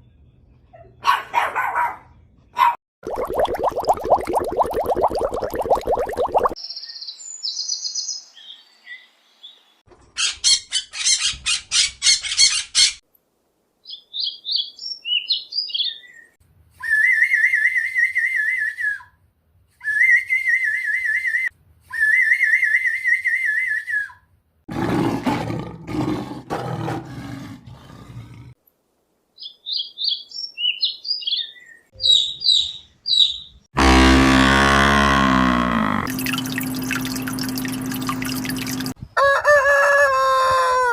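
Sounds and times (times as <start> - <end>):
rough noisy animal call: 24.7 - 28.6, 33.8 - 36.1
bird chirps: 29.4 - 33.6.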